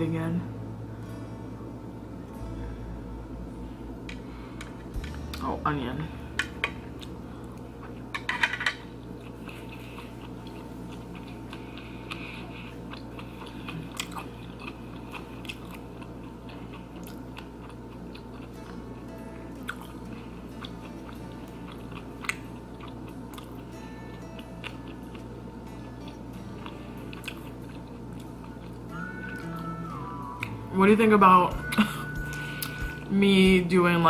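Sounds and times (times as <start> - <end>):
steady low hum: 0.0 - 34.0
person chewing food: 6.8 - 8.2, 8.9 - 18.9, 19.5 - 30.6, 32.1 - 33.1.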